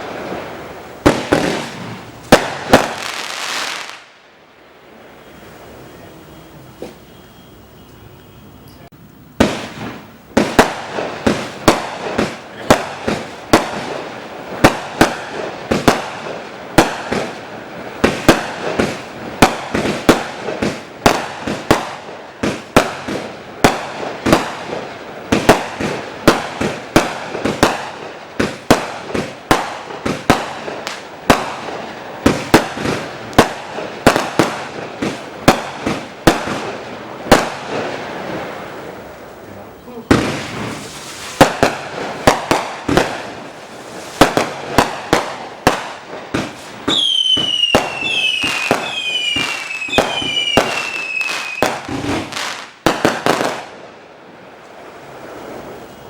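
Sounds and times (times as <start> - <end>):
fireworks shots and bursts: 0.0 - 4.2, 9.3 - 39.4, 40.0 - 56.0
fireworks crackling: 0.0 - 56.0.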